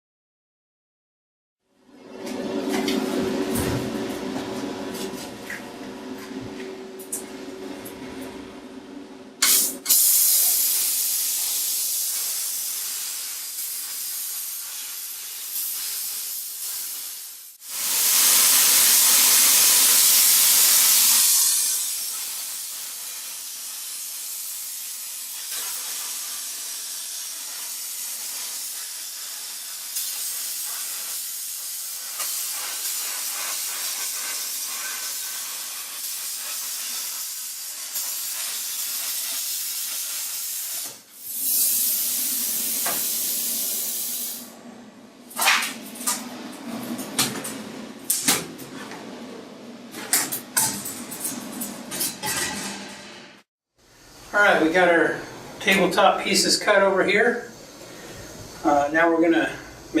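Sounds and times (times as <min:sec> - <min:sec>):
plasma cutter hissing: 0:09.4 - 0:44.5.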